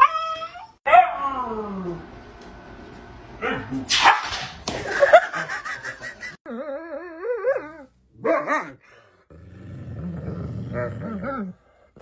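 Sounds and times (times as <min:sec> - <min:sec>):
dog barking and yipping: 0:03.4 - 0:04.5.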